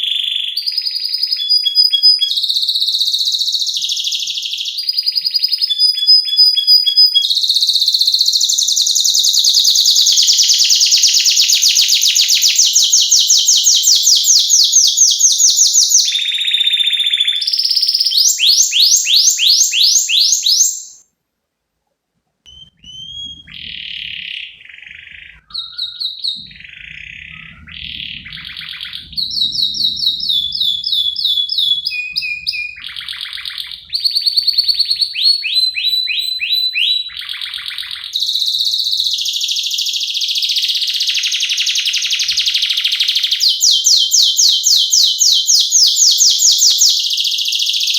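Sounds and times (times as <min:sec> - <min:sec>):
canary singing trills: 0:00.0 - 0:21.0, 0:22.5 - 0:47.9.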